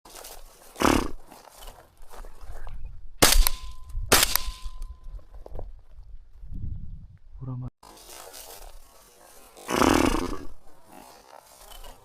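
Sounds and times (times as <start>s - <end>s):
shotgun shots: 3.2s - 4.8s.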